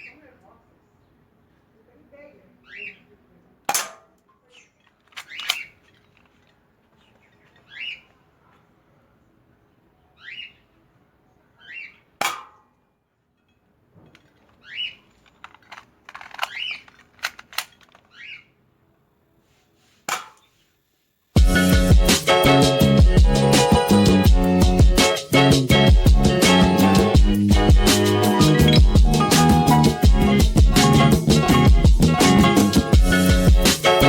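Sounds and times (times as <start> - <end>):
bird chirping: 2.5 - 3.2, 4.4 - 8.3, 9.9 - 12.2, 14.4 - 15.2, 16.5 - 16.9, 18.0 - 18.6, 28.3 - 29.8
airsoft pistol shots: 3.7 - 4.2, 5.2 - 5.7, 12.2 - 12.7, 20.1 - 20.5.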